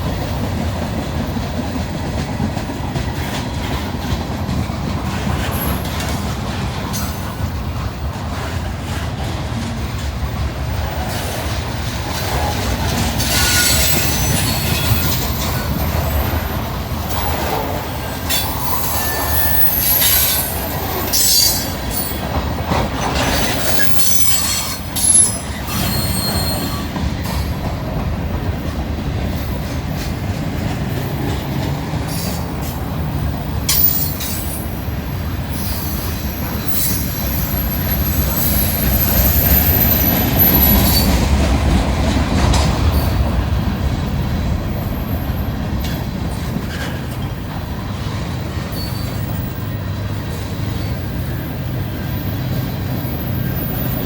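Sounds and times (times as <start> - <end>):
freight train cars rumbling past: 0.0 - 54.0
high wheel squeal: 13.2 - 22.3, 23.2 - 26.9, 35.5 - 41.2, 48.7 - 49.8.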